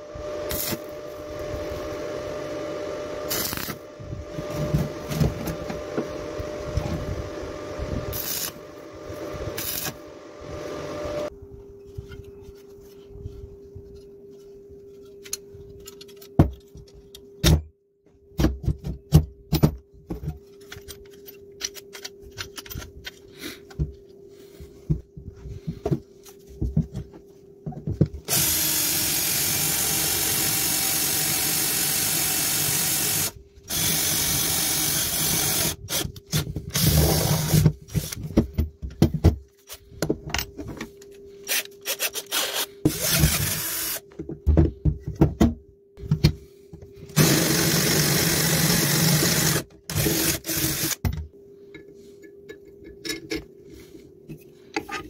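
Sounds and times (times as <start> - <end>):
faint steady hum: 0.0 - 55.0
power tool running: 7.9 - 11.3, 28.2 - 36.1, 41.5 - 44.0, 47.1 - 51.0.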